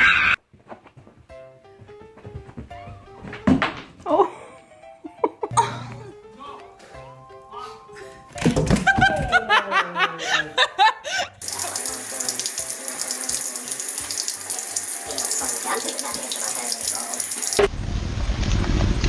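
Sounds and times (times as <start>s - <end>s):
tap running into sink: 11.4s - 17.7s.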